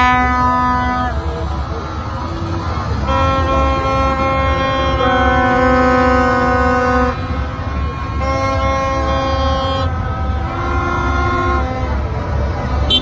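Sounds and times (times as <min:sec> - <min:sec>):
long loud horn blasts: 0:00.0 - 0:13.0
low traffic rumble: 0:00.0 - 0:13.0.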